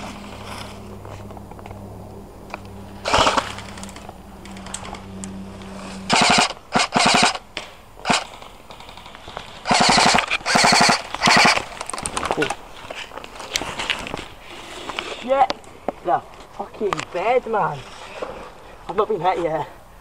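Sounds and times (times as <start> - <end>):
airsoft guns automatic fire: 3.0 - 3.8, 6.1 - 7.4, 8.0 - 12.5.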